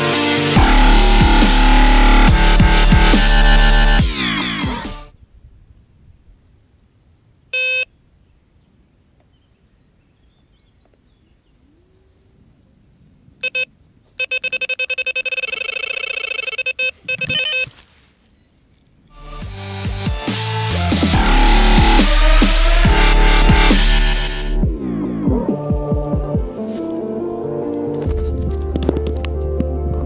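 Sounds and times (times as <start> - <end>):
electronic bite alarm bleeping: 7.6 - 7.9, 13.4 - 17.7.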